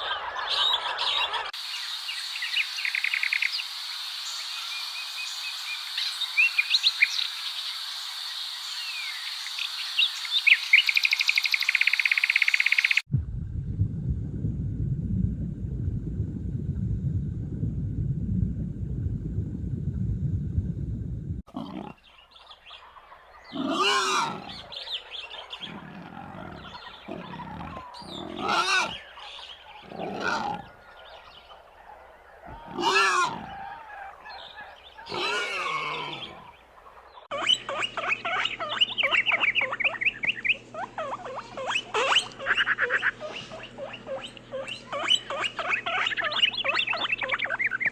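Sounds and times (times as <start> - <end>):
animal grunting: 21.5 - 22.0, 23.5 - 24.7, 25.6 - 29.0, 29.8 - 30.7, 32.5 - 33.6, 35.0 - 36.5.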